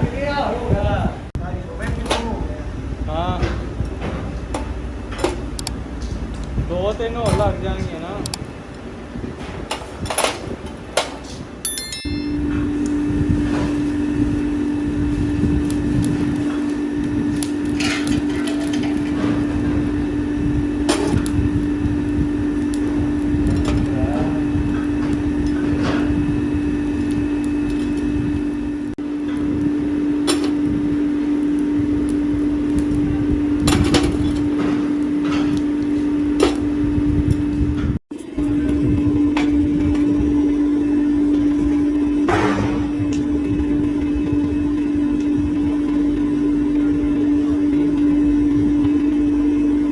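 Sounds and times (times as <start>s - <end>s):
workshop machine humming: 0.0s - 49.9s
ringing metal clink: 11.2s - 12.9s.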